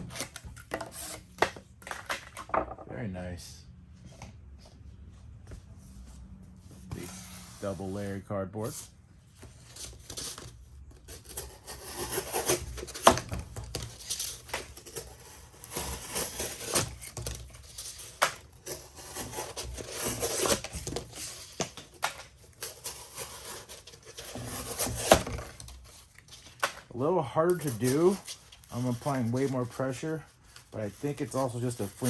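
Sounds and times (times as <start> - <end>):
cardboard crinkling: 9.5 - 32.0
knife sawing through cardboard: 11.1 - 13.2, 14.0 - 21.7, 22.5 - 25.6.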